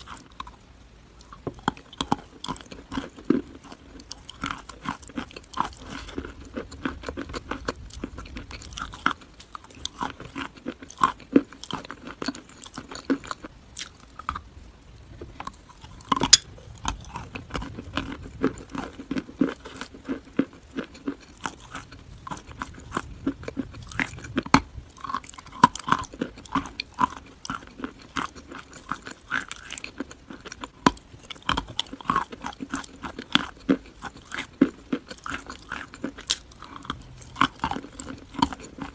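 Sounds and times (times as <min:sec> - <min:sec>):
crunchy chewing: 0:00.0 - 0:00.6, 0:01.2 - 0:38.9.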